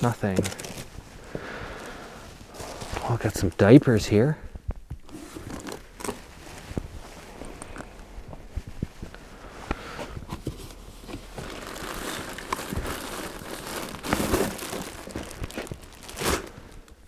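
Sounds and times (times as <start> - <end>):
plastic packaging crinkling: 0.0 - 1.0, 10.5 - 17.0.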